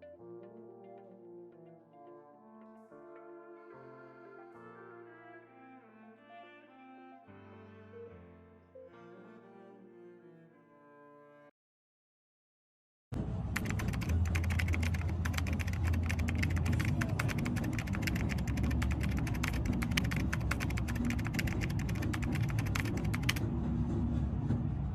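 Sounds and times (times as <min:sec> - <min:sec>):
rapid clicking rattle: 0:13.6 - 0:23.4
low engine-like hum: 0:23.4 - 0:24.9.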